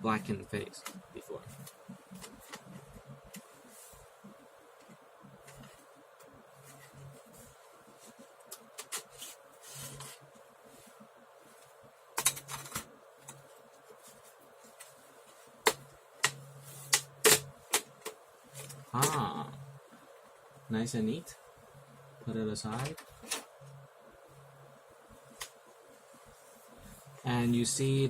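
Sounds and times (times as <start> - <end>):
plastic laptop parts clicking: 8.5 - 9.2, 12.2 - 13.4.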